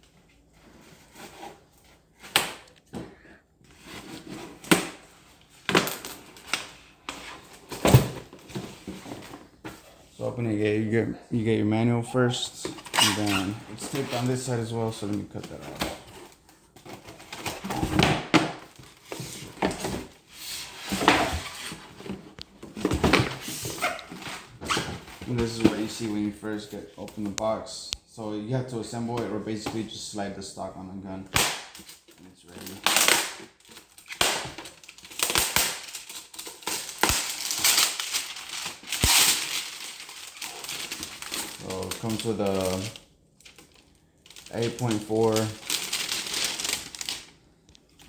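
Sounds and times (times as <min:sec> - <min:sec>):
packaging rustling and crinkling: 0:03.7 - 0:10.1, 0:12.6 - 0:27.5, 0:31.7 - 0:48.0
packing tape being cut: 0:32.8 - 0:41.8.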